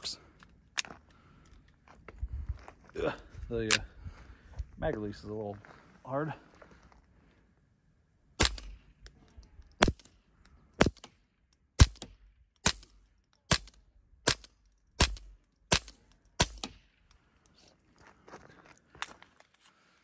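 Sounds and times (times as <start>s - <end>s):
suppressed pistol shots: 8.4s - 8.9s, 10.8s - 11.2s, 11.8s - 16.8s.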